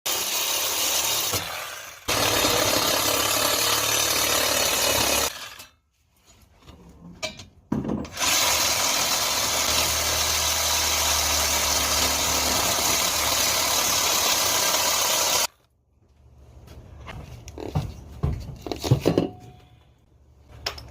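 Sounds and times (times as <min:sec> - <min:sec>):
power tool cutting cast iron: 0:00.1 - 0:05.7, 0:08.1 - 0:15.5.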